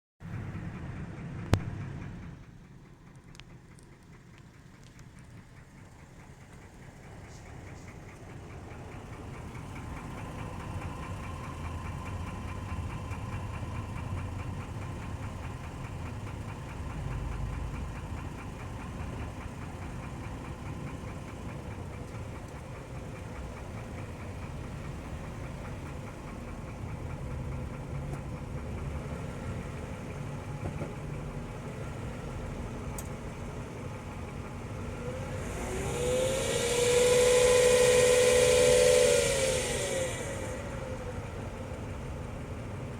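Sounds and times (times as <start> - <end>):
car engine idling with knocking tick: 0.2 - 42.9
loud gliding tone with hiss: 35.7 - 41.0.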